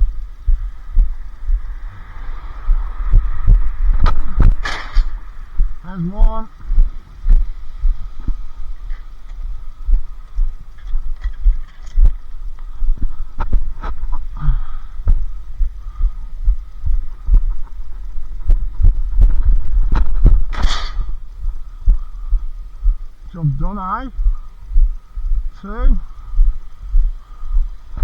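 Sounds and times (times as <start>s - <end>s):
heavy low thuds and knocks: 3.1s - 12.2s, 12.8s - 23.1s.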